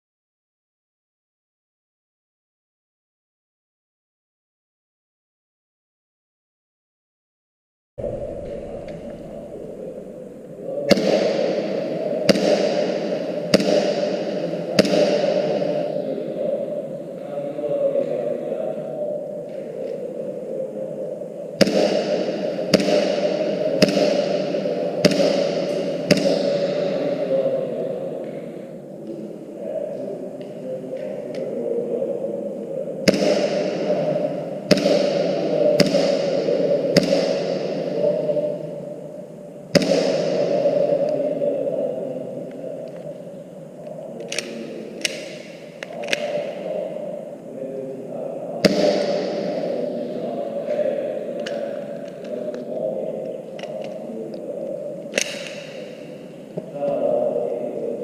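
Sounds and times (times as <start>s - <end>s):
low rumble: 8.0s - 12.3s
airsoft pistol shots: 8.1s - 15.8s, 21.6s - 26.9s, 33.0s - 38.0s, 39.7s - 40.6s, 48.6s - 49.6s, 55.1s - 56.0s
airsoft pistol cracks: 44.2s - 46.4s, 55.1s - 55.9s.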